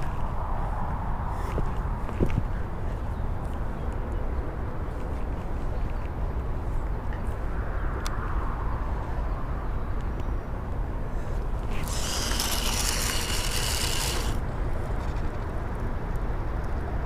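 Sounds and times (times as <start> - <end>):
fishing reel whirring: 11.6 - 14.4.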